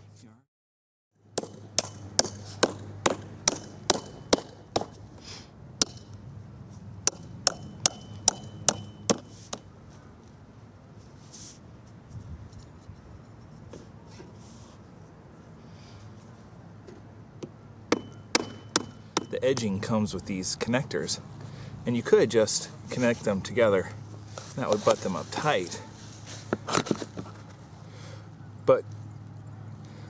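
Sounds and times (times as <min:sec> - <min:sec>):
hammer blows on fasteners: 0:01.4 - 0:05.2, 0:07.0 - 0:09.7, 0:17.9 - 0:19.8.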